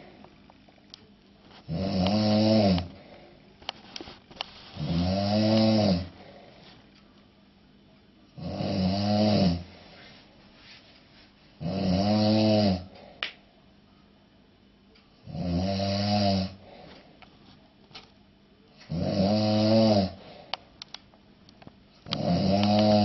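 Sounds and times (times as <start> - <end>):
man snoring heavily: 1.6 - 3.3, 4.7 - 6.6, 8.4 - 9.9, 11.6 - 13.0, 15.2 - 16.9, 18.9 - 20.5, 22.1 - 23.0
quiet breathing: 2.5 - 7.3, 9.6 - 11.6, 12.8 - 13.2, 16.4 - 17.7, 20.0 - 20.9.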